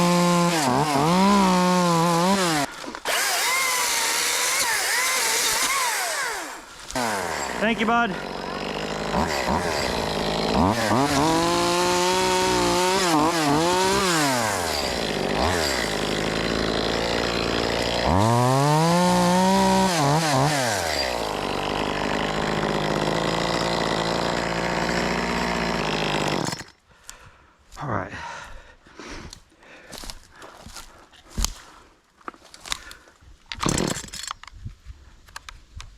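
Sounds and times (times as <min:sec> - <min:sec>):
chainsaw cutting wood: 0:00.0 - 0:26.8, 0:33.6 - 0:34.2.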